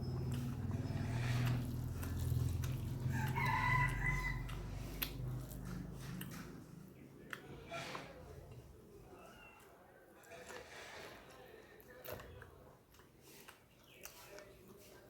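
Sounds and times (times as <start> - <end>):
close-up eating and chewing: 0.0 - 15.0
rooster crowing: 2.9 - 4.7.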